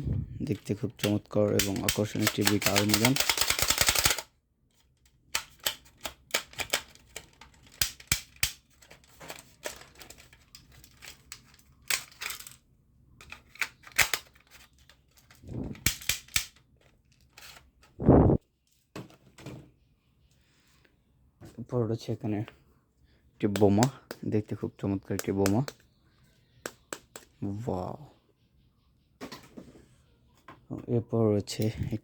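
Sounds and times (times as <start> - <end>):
plastic toy gun clicks: 1.0 - 4.3, 5.3 - 8.9, 13.2 - 16.6.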